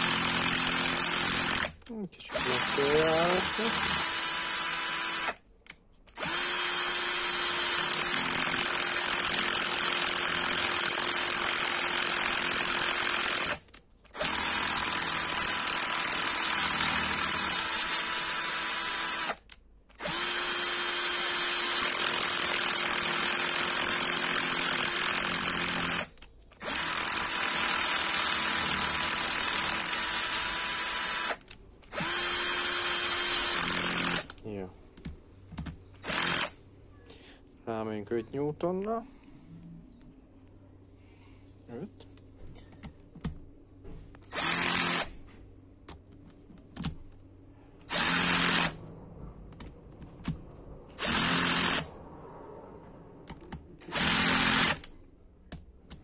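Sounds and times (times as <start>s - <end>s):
small electric motor whining: 0.0s - 5.4s, 6.1s - 19.4s.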